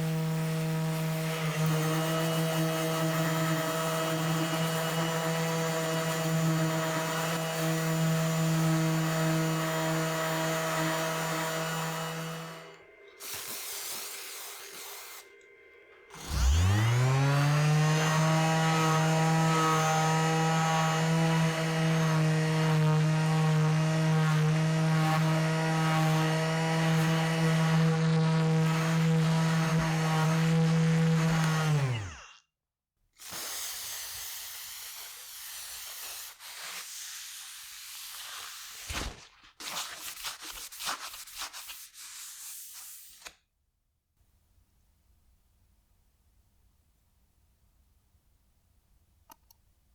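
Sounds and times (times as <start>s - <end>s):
power tool motor whining: 14.2s - 32.4s.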